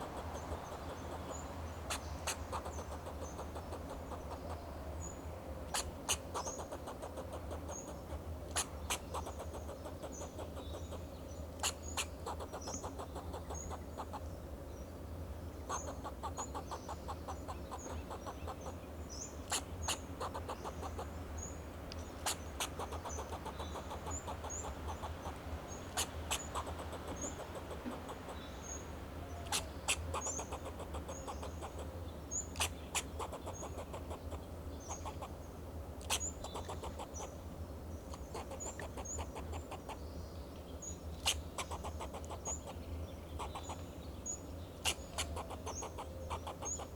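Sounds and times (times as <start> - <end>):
squirrel alarm barks: 0.0 - 4.6, 5.7 - 11.0, 11.6 - 14.2, 15.7 - 18.8, 19.5 - 21.1, 22.2 - 28.5, 29.4 - 31.9, 32.6 - 35.4, 36.1 - 37.3, 41.2 - 42.7, 43.4 - 43.8, 44.8 - 46.9.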